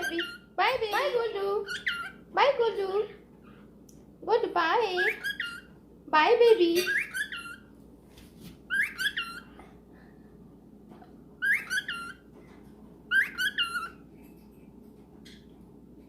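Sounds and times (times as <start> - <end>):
cockatiel chirping whistles: 8.7 - 9.4, 11.4 - 12.2, 13.1 - 14.0.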